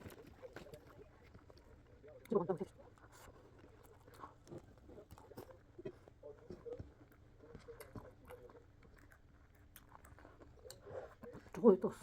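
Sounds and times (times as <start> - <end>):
soft chewing: 0.0 - 12.0.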